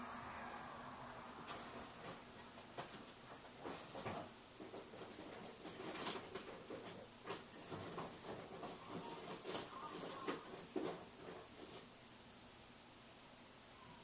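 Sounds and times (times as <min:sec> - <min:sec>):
rummaging rustling: 0:01.5 - 0:11.9.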